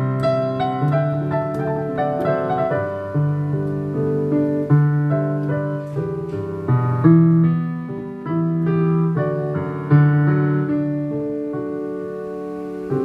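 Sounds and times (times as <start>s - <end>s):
piano melody: 0.0s - 13.0s.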